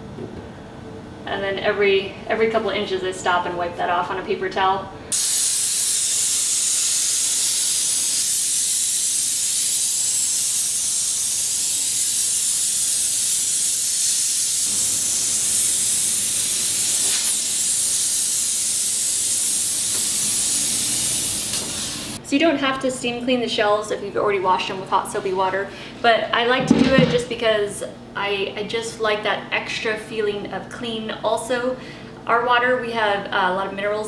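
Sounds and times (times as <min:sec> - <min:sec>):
steam cleaner hissing: 0:05.1 - 0:22.2.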